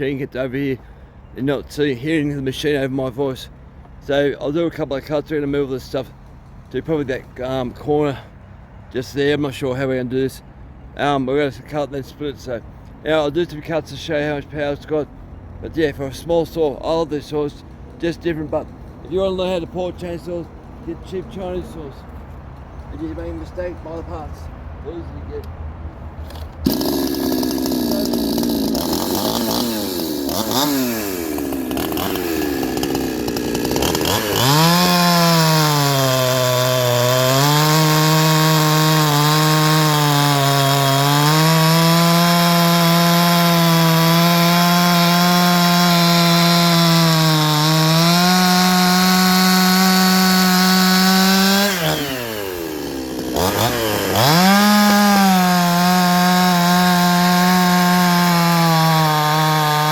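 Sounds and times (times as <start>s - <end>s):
chainsaw revving and cutting wood: 26.3s - 59.9s.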